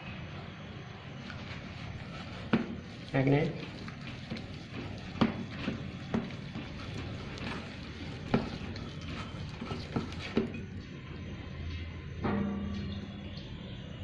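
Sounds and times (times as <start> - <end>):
stirring chicken in wet marinade: 1.1 - 11.0.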